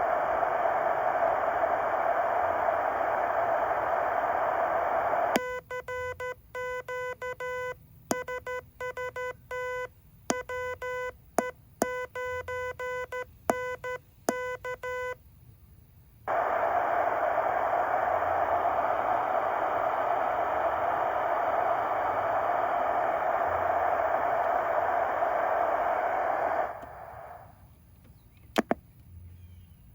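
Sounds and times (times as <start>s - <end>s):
receiver hiss: 0.0s - 5.6s, 16.3s - 27.8s.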